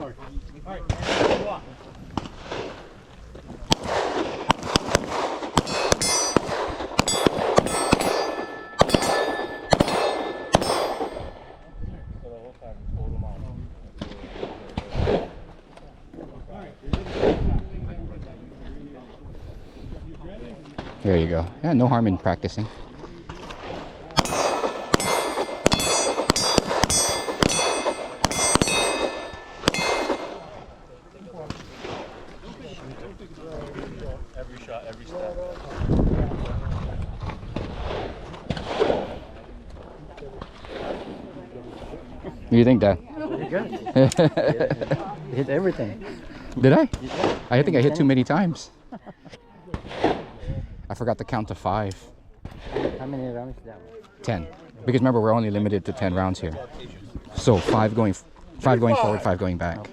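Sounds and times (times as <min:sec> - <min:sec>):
handgun shots: 0:03.7 - 0:11.3, 0:24.2 - 0:30.6
metallic ringing: 0:05.6 - 0:12.0, 0:24.2 - 0:30.8.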